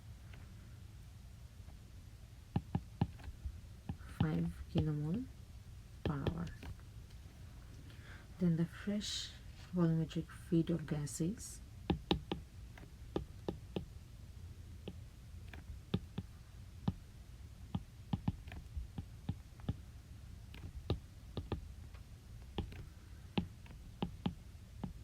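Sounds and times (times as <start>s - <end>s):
faint low hum: 0.0s - 25.0s
light sharp clicks and taps: 17.7s - 19.8s, 20.5s - 25.0s.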